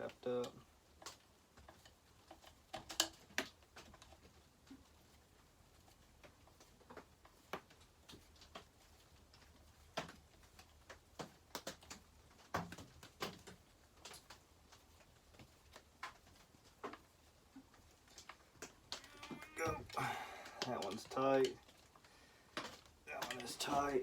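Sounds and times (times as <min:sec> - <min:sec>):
hand tools clicking on metal parts: 0:22.6 - 0:24.0.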